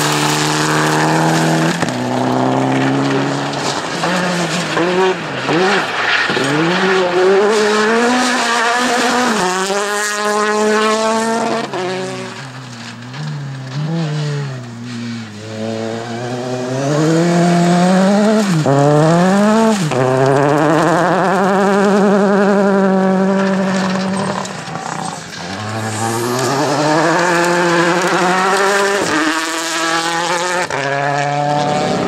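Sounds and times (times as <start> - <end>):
rally car engine revving: 0.0 - 32.0.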